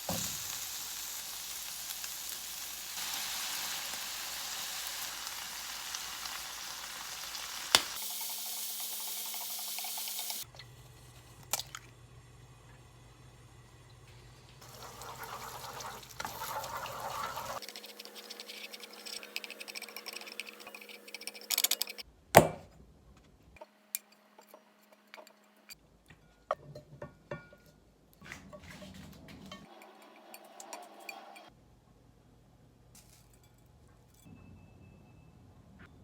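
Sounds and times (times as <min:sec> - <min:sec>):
water pouring: 0:14.5 - 0:19.1
clinks and taps: 0:26.1 - 0:27.8.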